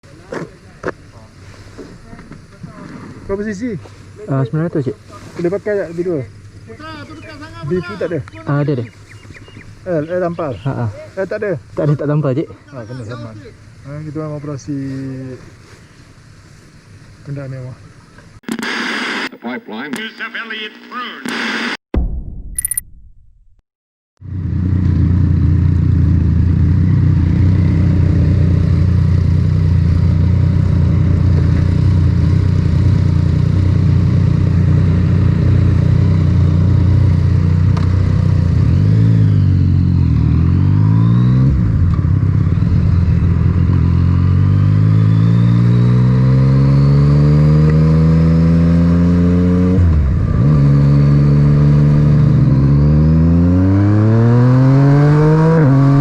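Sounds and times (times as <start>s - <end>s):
motorcycle engine revving: 24.2s - 56.0s.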